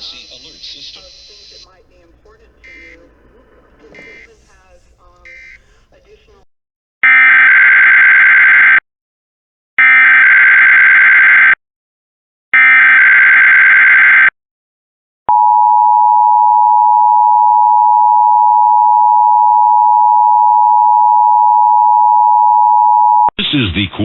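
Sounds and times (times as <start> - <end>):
raspy digital data tones: 0.0 - 4.4
steady alert attention tone: 2.6 - 4.6.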